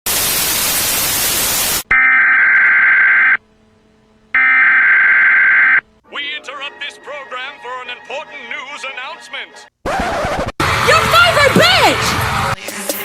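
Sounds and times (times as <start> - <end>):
loud static hiss: 0.1 - 6.0
buzzy electronic tones: 1.9 - 3.5, 4.3 - 5.9.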